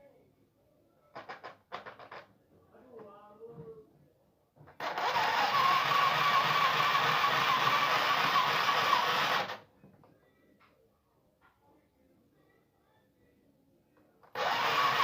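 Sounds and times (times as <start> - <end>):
sewing machine running: 4.8 - 9.6, 14.3 - 15.0.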